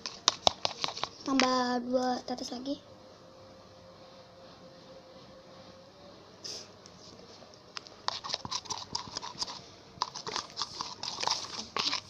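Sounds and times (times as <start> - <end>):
slime stirred with sticky clicks: 0.0 - 1.6, 7.8 - 12.0.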